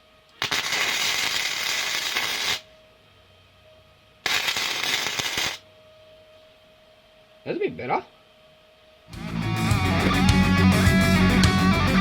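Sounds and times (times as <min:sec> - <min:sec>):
arc welder crackling: 0:00.3 - 0:02.7, 0:04.2 - 0:05.6.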